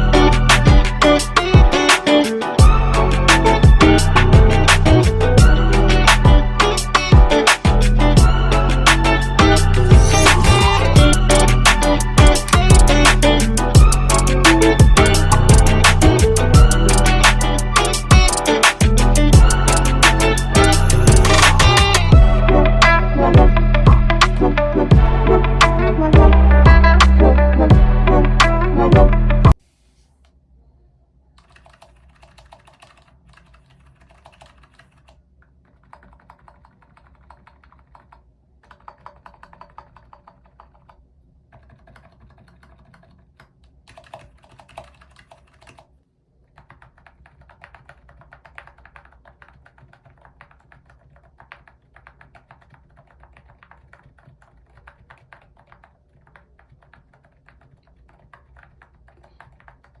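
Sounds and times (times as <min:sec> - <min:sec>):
soft keyboard typing: 0:10.2 - 0:22.1, 0:31.3 - 1:00.0.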